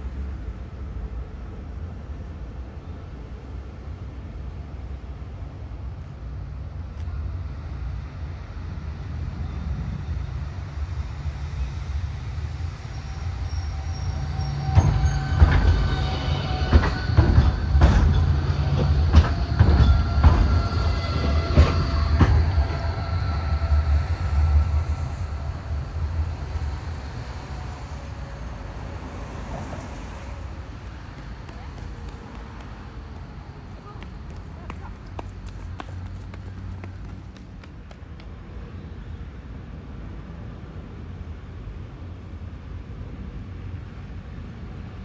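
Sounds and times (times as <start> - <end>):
train rumbling on rails: 0.0 - 45.0
wheels clanking on track: 13.4 - 24.8.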